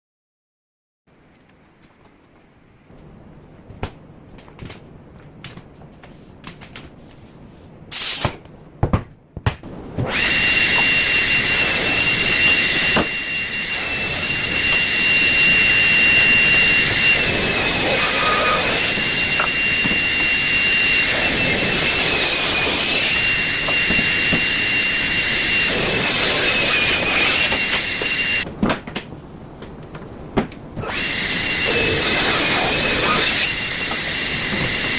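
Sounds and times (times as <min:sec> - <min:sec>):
woodworking power tool whining: 0:10.0 - 0:28.4, 0:30.8 - 0:34.9.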